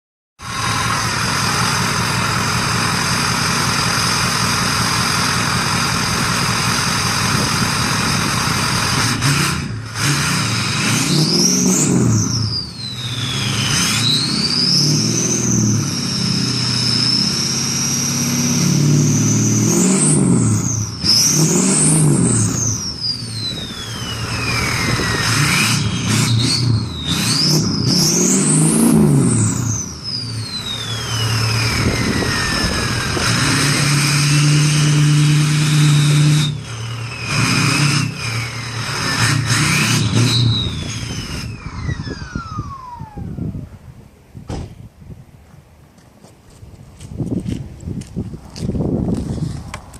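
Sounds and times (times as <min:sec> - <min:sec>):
diesel engine revving: 0:00.4 - 0:44.7
turbocharger whistling: 0:05.8 - 0:43.9.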